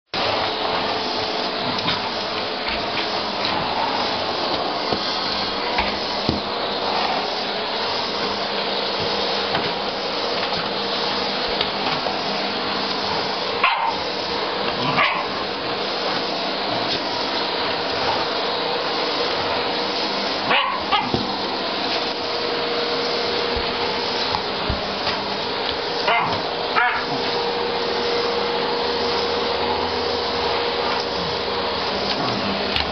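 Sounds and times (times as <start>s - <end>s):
vacuum cleaner running: 0.2s - 32.9s
dog barking: 13.6s - 14.0s, 14.8s - 15.3s, 20.5s - 21.2s, 26.0s - 27.2s.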